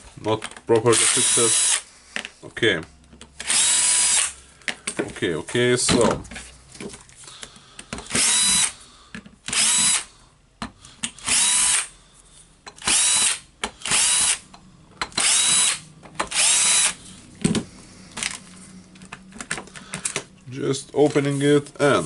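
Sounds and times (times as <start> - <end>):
cordless drill whining: 0.9 - 1.8, 3.4 - 4.4, 8.0 - 8.8, 9.5 - 10.1, 11.1 - 11.9, 12.8 - 14.4, 15.2 - 17.1.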